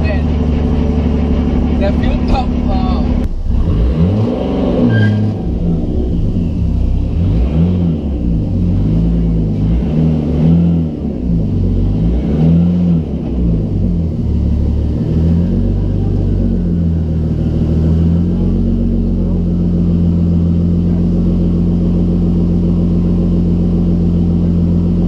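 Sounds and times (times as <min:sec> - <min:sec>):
car engine revving through gears: 0:00.0 - 0:25.0.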